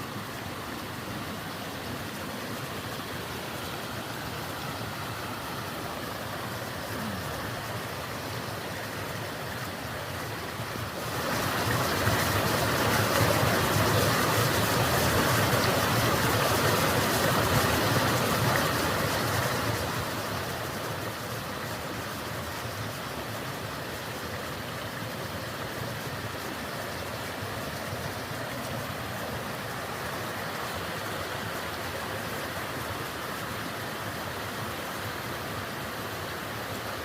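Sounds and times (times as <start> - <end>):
steady rushing noise: 0.0 - 22.7.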